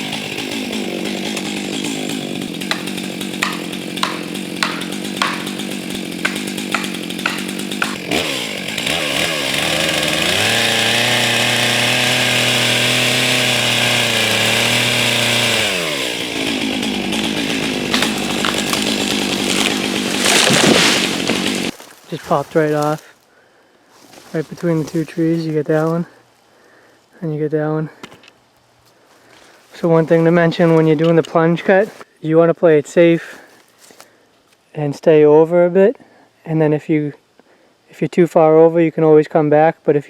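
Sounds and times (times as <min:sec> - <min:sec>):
chainsaw idling and revving: 0:00.0 - 0:23.0, 0:29.8 - 0:31.2
sharp knocks: 0:02.7 - 0:08.0.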